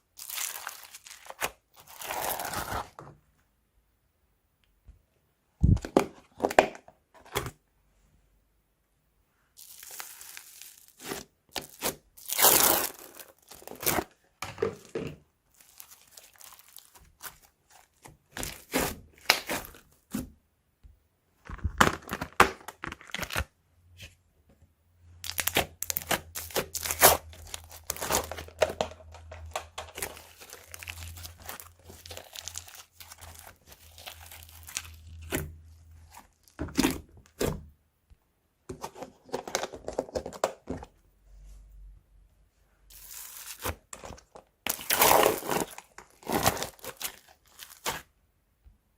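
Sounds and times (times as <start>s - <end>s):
crunchy slime crackling: 0.0s - 3.0s, 9.6s - 14.2s, 15.5s - 20.3s, 25.2s - 37.5s, 42.9s - 48.1s.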